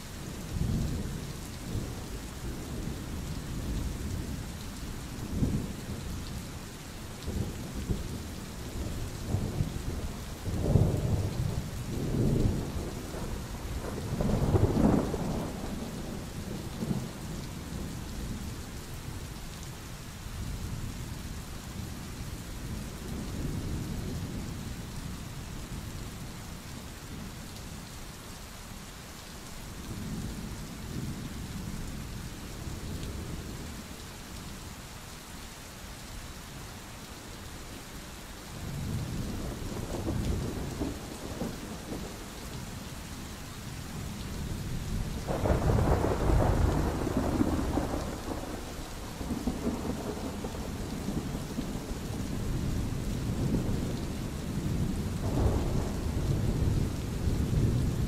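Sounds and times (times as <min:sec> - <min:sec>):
steady rain: 0:00.0 - 0:58.0
rolling thunder: 0:44.5 - 0:58.0.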